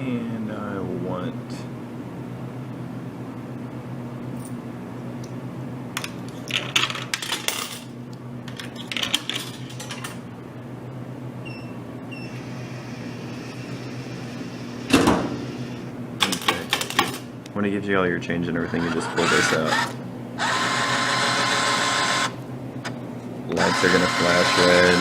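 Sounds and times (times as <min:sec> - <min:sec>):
vending machine hum: 0:00.0 - 0:25.0
coins clattering into coin return: 0:06.5 - 0:07.9.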